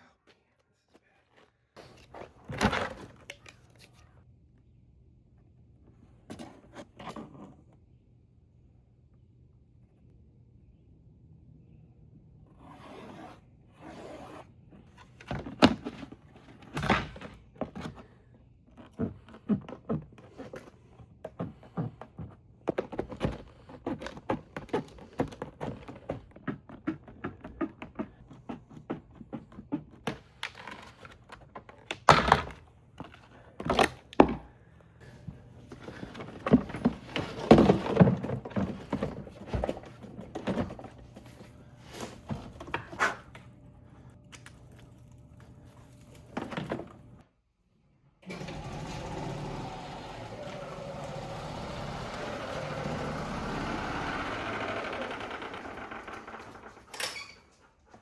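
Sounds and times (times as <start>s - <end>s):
hardware thunking and knocking: 35.2s - 41.3s.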